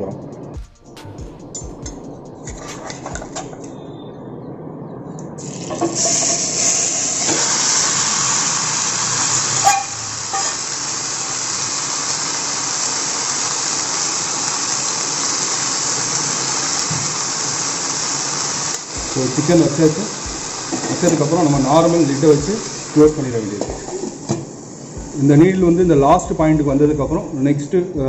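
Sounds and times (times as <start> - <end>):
chicken sizzling in oil: 5.4 - 25.0
knock on pan: 20.3 - 21.0, 23.6 - 25.1.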